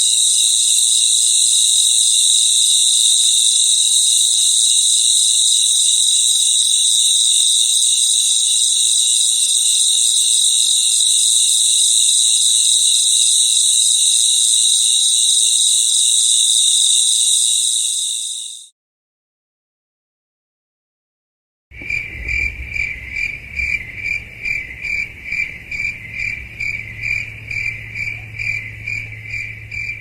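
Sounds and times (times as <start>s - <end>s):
crickets trilling: 0.0s - 18.7s, 21.8s - 30.0s.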